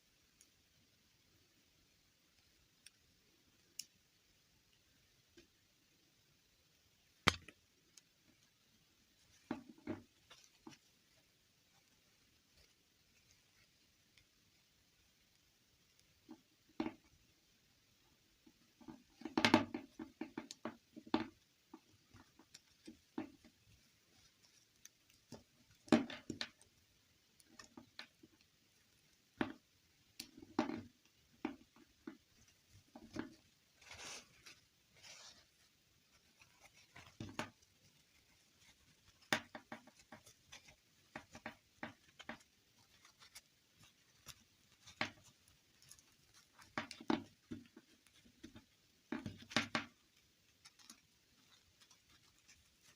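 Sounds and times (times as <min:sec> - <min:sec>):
plastic toys tapping and clicking: 0:18.4 - 0:26.7, 0:36.2 - 0:52.9.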